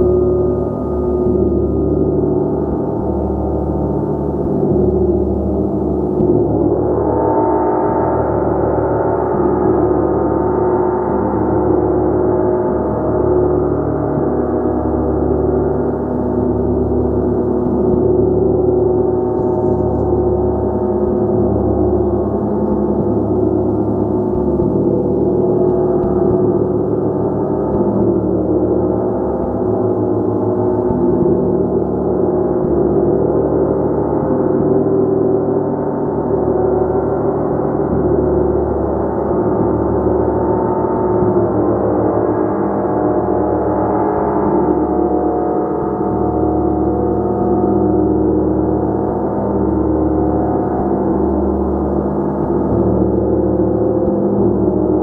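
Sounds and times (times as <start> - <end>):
gong played continuously: 0.0 - 55.0.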